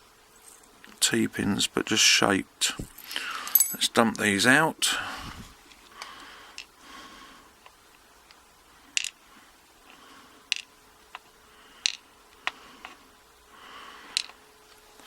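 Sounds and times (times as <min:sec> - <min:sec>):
small pins dropping on hard surface: 0:02.8 - 0:04.3.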